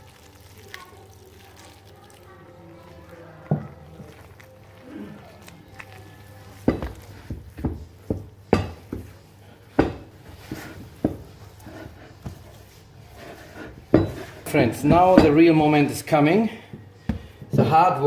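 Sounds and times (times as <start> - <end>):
utensils knocking on bowl: 6.6 - 12.6, 13.2 - 15.6.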